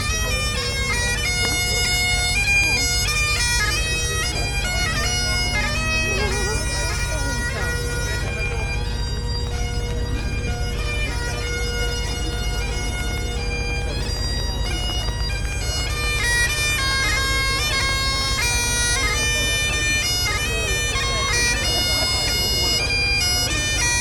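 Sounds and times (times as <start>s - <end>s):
bagpipes playing a tune: 0.0s - 24.0s.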